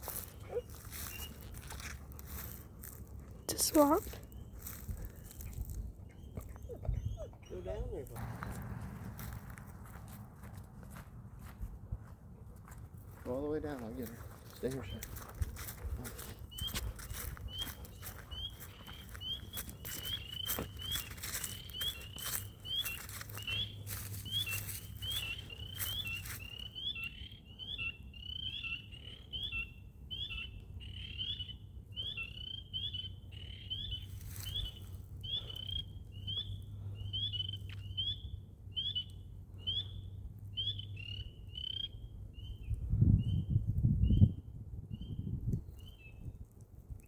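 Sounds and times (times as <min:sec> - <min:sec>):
frogs chirping: 0:16.2 - 0:42.0.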